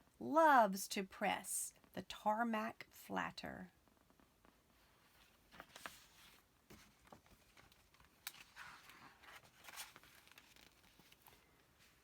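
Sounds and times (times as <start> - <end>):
book pages rustling: 3.9 - 12.0.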